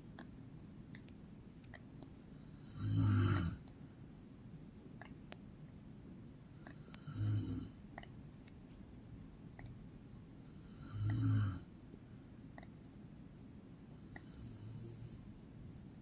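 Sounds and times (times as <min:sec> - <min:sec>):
woman snoring: 0:02.6 - 0:03.6, 0:07.0 - 0:07.8, 0:10.6 - 0:11.7, 0:14.2 - 0:15.2.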